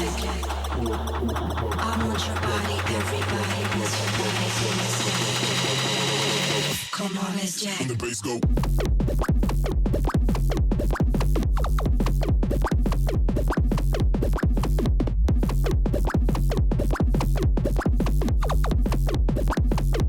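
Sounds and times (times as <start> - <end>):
electronic dance music: 0.0 - 11.2.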